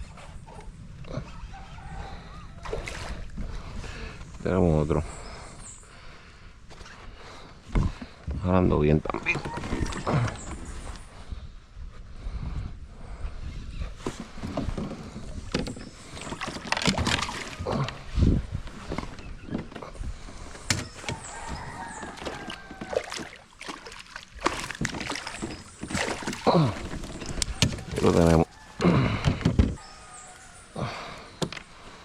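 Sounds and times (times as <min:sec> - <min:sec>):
bird calling with falling cry: 0:09.2 - 0:11.1, 0:18.9 - 0:23.5, 0:25.0 - 0:32.0
fish splashing and knocking: 0:14.4 - 0:18.0, 0:20.6 - 0:28.2.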